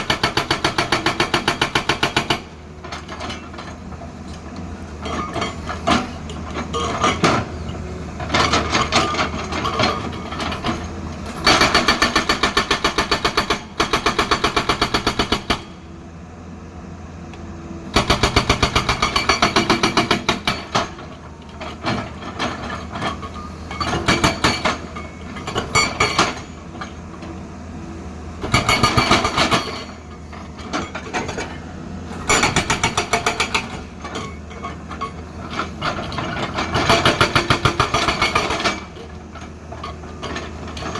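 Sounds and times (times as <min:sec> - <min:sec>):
hydraulic breaker hammering stone: 0:00.0 - 0:03.8, 0:08.2 - 0:15.8, 0:17.9 - 0:27.0, 0:28.4 - 0:40.9
diesel engine running: 0:02.4 - 0:11.5.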